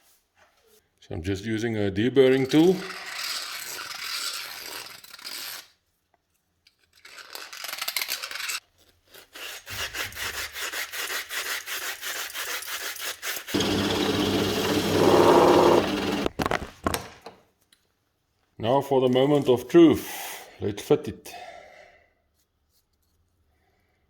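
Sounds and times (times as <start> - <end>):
deburring tool scraping acrylic: 13.5 - 16.4.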